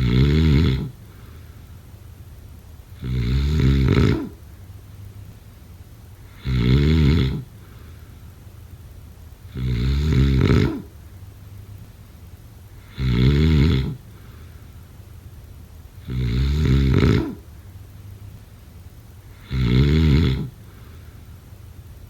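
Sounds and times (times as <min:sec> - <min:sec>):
loud snores: 0:00.0 - 0:01.1, 0:03.0 - 0:04.5, 0:06.2 - 0:07.6, 0:09.5 - 0:11.0, 0:12.8 - 0:14.1, 0:16.0 - 0:17.5, 0:19.3 - 0:20.8
quiet breathing: 0:00.0 - 0:22.0.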